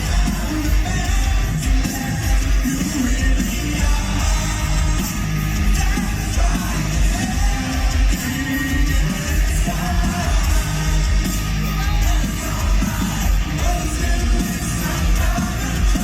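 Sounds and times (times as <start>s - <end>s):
heavy metal band playing: 0.0s - 16.0s
singer yelling vocals: 0.0s - 16.0s.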